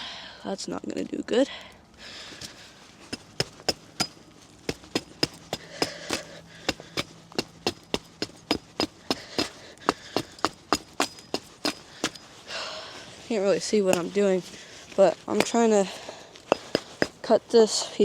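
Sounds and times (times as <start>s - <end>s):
hatchet chopping wood: 2.4s - 12.5s, 13.6s - 17.3s.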